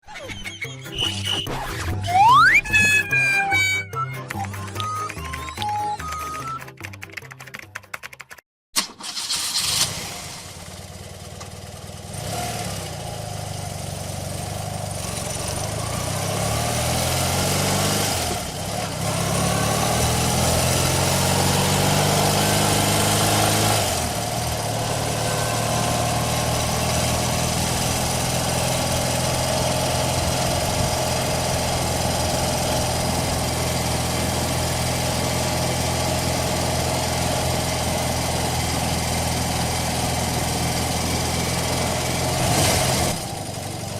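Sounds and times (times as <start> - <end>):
motorcycle engine revving: 9.3 - 43.9.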